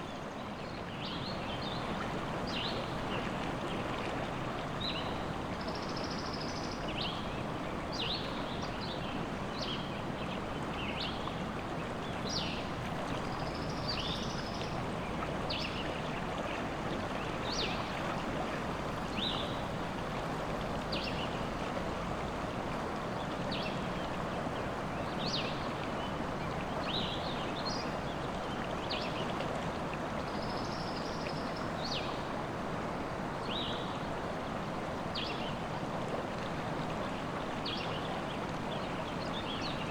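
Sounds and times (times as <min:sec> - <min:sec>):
river flowing: 0:00.0 - 0:39.9.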